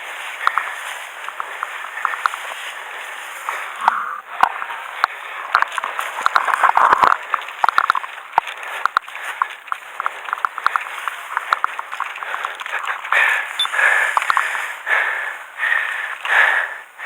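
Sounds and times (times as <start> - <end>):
noisy rustle: 0.0 - 3.9.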